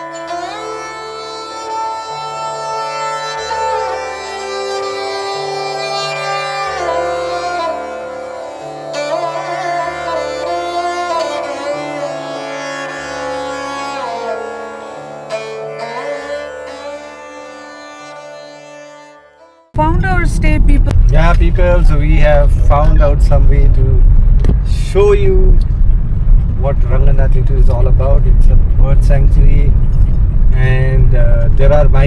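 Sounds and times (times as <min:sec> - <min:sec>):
instrumental music with sliding notes: 0:00.0 - 0:19.8
repeating low bass pattern: 0:19.8 - 0:32.0.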